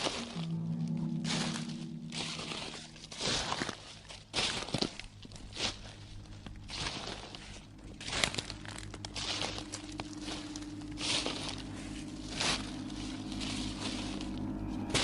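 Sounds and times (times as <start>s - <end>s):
held tone: 0.0s - 5.4s
crinkling crunching noise: 0.0s - 15.0s
low steady drone: 0.0s - 15.0s.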